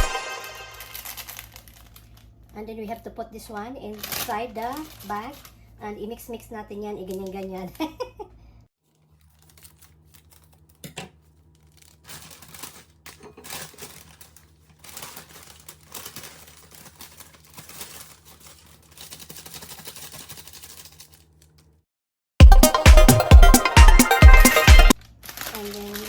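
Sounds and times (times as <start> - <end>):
plastic bag crinkling and rustling: 0.0 - 3.0, 3.8 - 5.8, 6.9 - 8.0, 8.8 - 21.8, 24.9 - 26.0.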